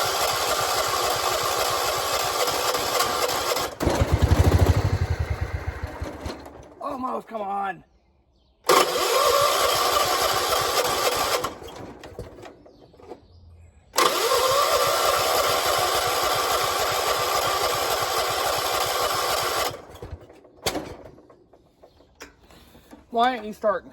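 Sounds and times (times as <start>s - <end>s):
electric starter cranking engine: 0.0s - 6.8s, 8.7s - 13.2s, 13.9s - 22.2s.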